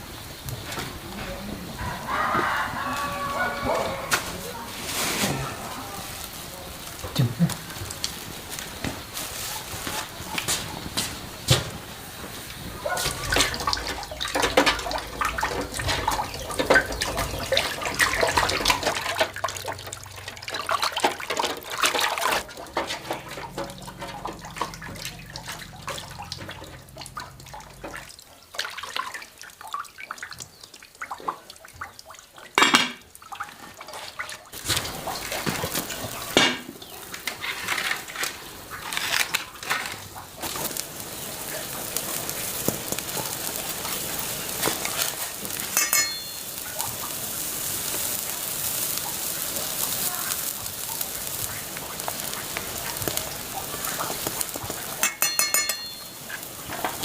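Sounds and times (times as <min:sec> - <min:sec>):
water running and splashing: 0:00.0 - 0:57.0
small knocks and clinks: 0:45.7 - 0:46.6, 0:55.0 - 0:57.0.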